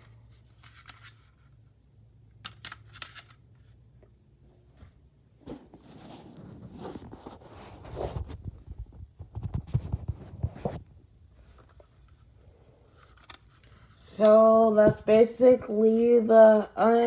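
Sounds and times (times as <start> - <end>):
rustling: 4.7 - 16.6
objects being handled: 4.8 - 15.2.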